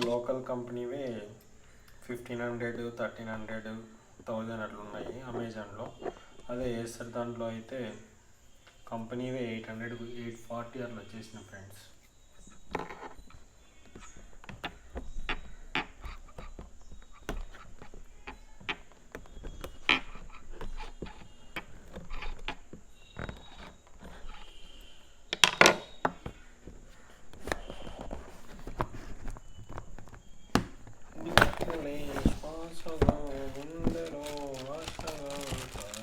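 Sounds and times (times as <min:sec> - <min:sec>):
charger and packaging handled: 0:26.2 - 0:36.0.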